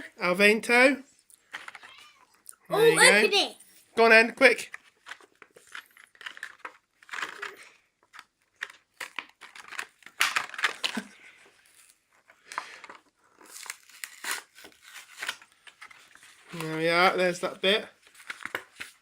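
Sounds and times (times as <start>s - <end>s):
plastic packaging crackling and tearing: 4.6s - 17.2s, 17.9s - 19.0s.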